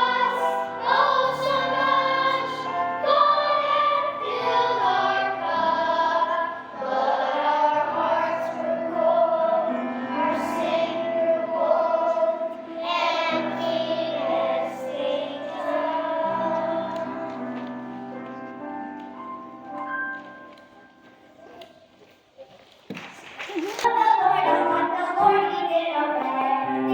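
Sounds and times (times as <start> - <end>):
children's choir singing: 0.0 - 18.7, 23.9 - 26.9.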